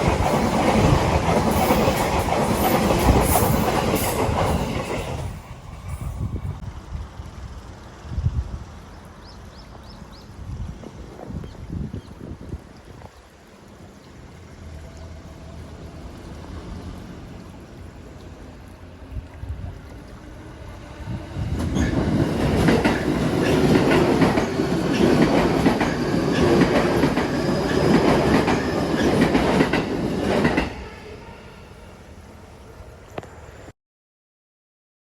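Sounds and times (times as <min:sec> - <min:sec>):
wheels clickety-clack: 0:00.0 - 0:06.2, 0:21.4 - 0:30.8
electric train passing: 0:00.0 - 0:11.2, 0:13.4 - 0:33.7.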